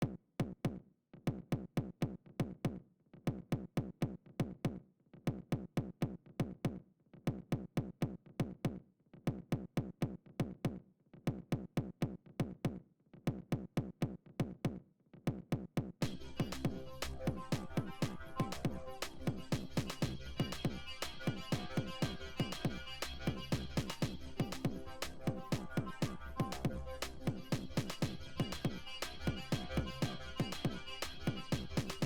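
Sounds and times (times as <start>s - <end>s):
electronic music with drum machine: 16.0s - 32.0s.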